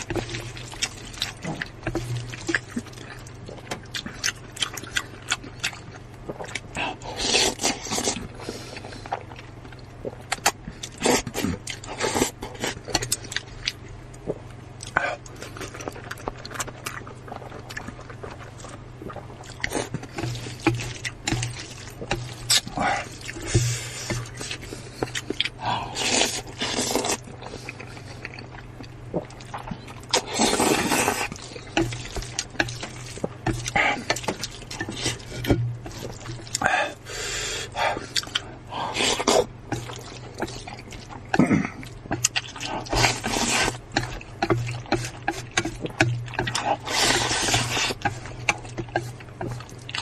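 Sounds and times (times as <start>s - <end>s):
steady low hum: 0.0s - 50.0s
utensils scraping food: 42.2s - 49.7s.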